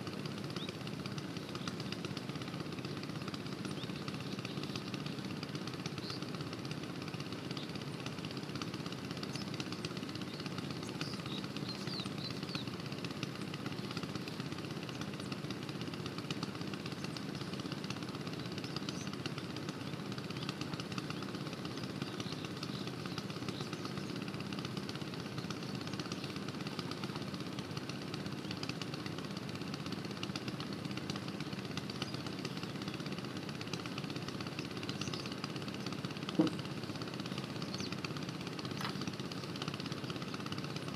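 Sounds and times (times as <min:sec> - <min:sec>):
diesel pump engine chugging: 0:00.1 - 0:40.9.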